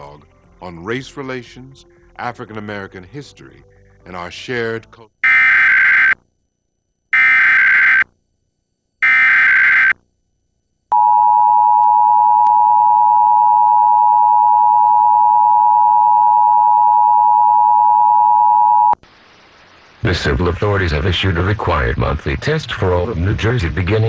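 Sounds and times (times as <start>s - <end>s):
digital data bursts: 7.2s - 8.0s, 9.0s - 10.0s
two-tone attention signal: 11.0s - 19.0s.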